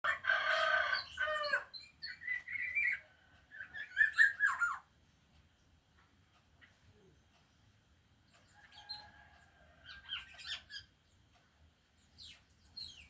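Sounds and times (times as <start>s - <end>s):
bird singing whistled notes: 1.1s - 3.0s, 3.6s - 4.8s.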